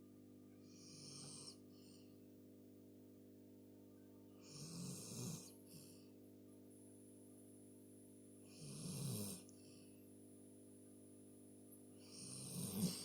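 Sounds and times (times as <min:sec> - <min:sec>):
person snoring: 0:08.5 - 0:09.7, 0:12.0 - 0:13.0.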